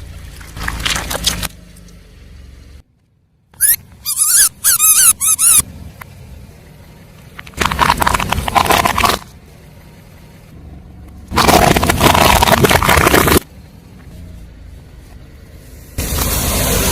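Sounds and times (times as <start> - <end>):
high wavering squeaks: 3.6 - 5.6
objects crushed under car tyre: 11.3 - 13.5.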